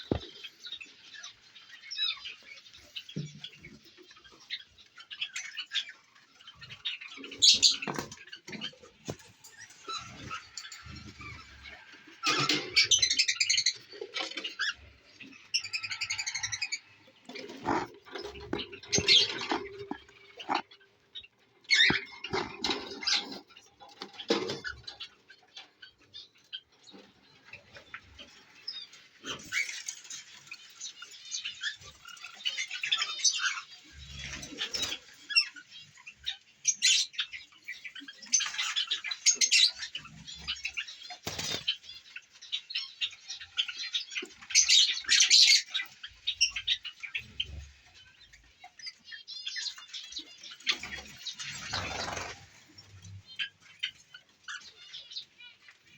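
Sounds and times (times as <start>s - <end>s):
birds chirping and squawking: 0.0s - 55.9s
wings fluttering: 17.3s - 20.8s, 41.2s - 41.8s, 50.7s - 53.1s.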